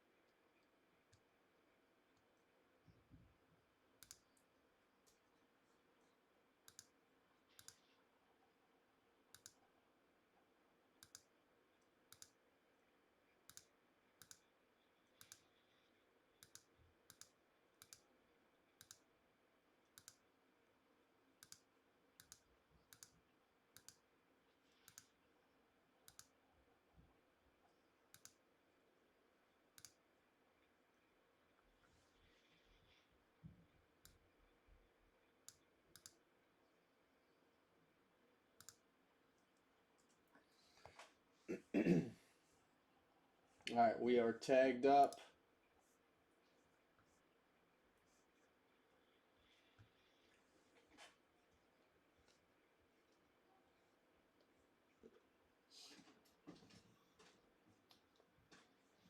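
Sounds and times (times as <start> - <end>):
computer mouse and keyboard clicking: 4.0 - 5.2, 6.7 - 8.0, 9.3 - 9.6, 11.0 - 12.4, 13.5 - 14.5, 15.1 - 15.6, 16.4 - 18.1, 18.8 - 19.1, 19.9 - 20.3, 21.4 - 23.2, 23.8 - 24.0, 24.6 - 25.2, 26.1 - 26.4, 28.1 - 28.4, 29.8 - 30.0, 35.5 - 36.2, 38.6 - 38.8.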